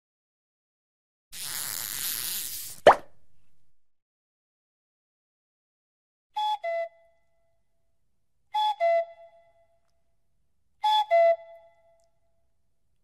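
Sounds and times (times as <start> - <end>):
cuckoo call: 6.4 - 7.3, 8.5 - 9.8, 10.8 - 12.2.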